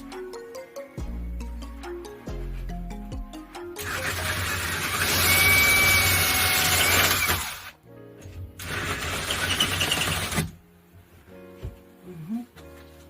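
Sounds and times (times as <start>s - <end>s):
power tool motor whining: 3.8s - 7.7s.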